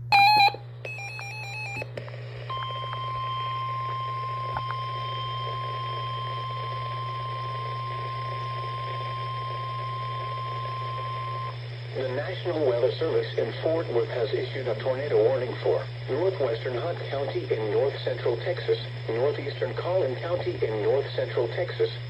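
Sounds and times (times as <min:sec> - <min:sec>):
steady warning alarm tone: 0:00.0 - 0:01.8, 0:02.5 - 0:11.6
radio hiss and hum: 0:01.5 - 0:22.0.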